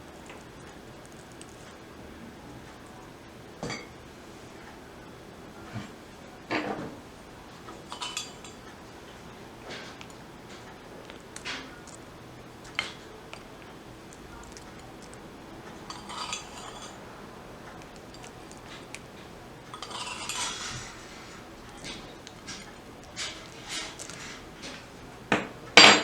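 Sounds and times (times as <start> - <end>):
cutlery scraping against a dish: 7.7 - 13.7, 15.8 - 17.0, 17.8 - 24.9.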